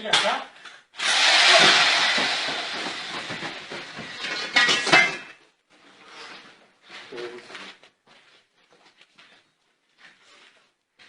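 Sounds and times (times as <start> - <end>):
tool rushing hiss with rattling: 1.0 - 3.6.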